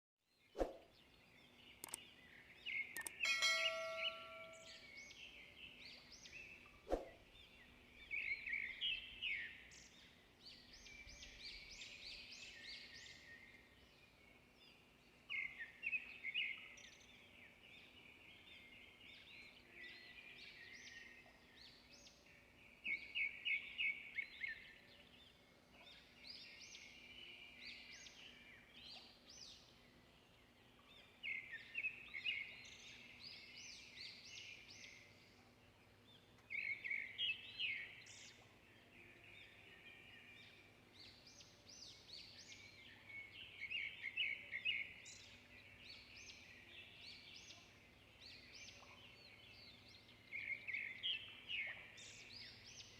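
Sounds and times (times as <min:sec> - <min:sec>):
small birds chirping: 0:00.4 - 0:52.9
sharp click: 0:01.8 - 0:02.0, 0:02.9 - 0:03.2.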